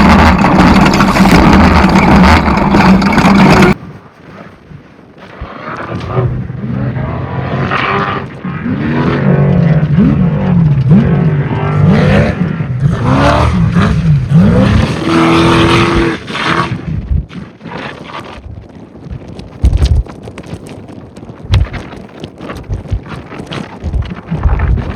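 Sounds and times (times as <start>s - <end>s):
off-road engine revving: 0.0s - 3.8s, 5.7s - 16.8s.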